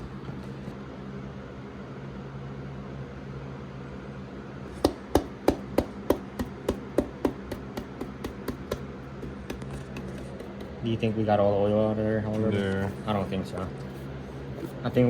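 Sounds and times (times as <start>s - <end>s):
knocks on plastic bottle: 4.7s - 10.8s.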